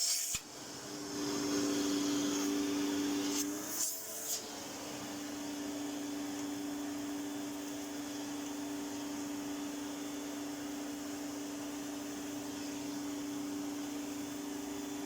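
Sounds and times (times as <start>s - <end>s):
vacuum cleaner running: 0.0s - 15.0s.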